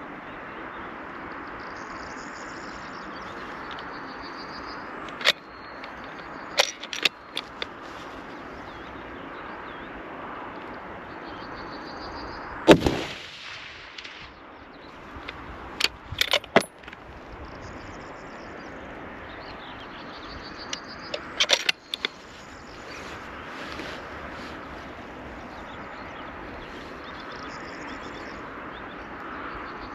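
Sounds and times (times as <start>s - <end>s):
rifle bolt clicks and clacks: 5.1s - 7.7s, 15.2s - 17.0s, 21.1s - 22.2s
steady hiss: 12.6s - 14.3s
loud echoing rifle shot: 12.7s - 14.3s.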